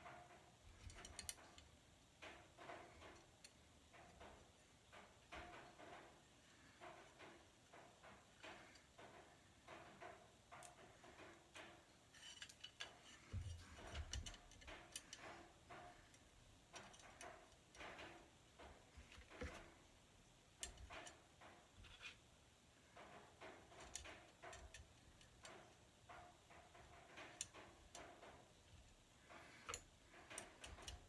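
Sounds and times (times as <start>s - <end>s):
small parts and tools clicking: 0.0s - 22.3s, 22.9s - 31.0s.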